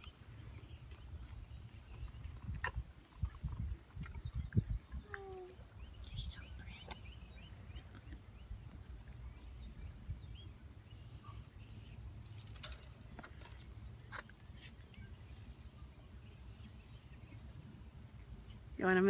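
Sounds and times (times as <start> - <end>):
faint bird chirps: 4.2 - 17.5.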